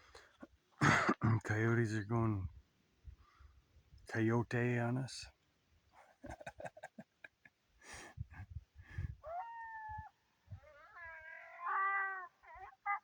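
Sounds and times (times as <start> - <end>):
coyotes howling and yipping: 9.0 - 13.0.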